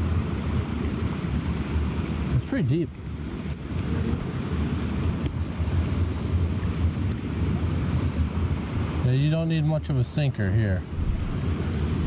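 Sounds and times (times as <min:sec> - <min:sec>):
stream rushing: 0:00.0 - 0:12.0
wind buffeting microphone: 0:10.8 - 0:12.0.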